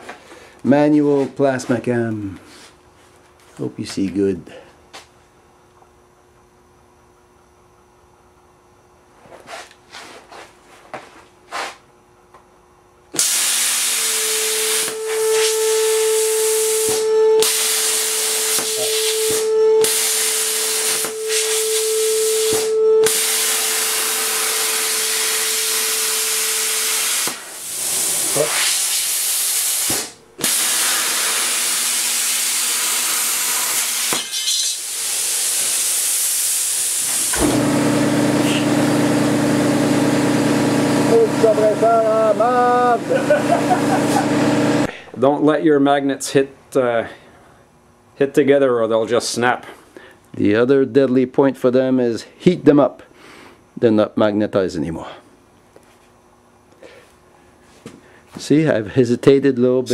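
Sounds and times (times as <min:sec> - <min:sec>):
plasma cutter hissing: 0:13.2 - 0:37.4
low motor hum: 0:14.0 - 0:26.8, 0:37.3 - 0:45.0.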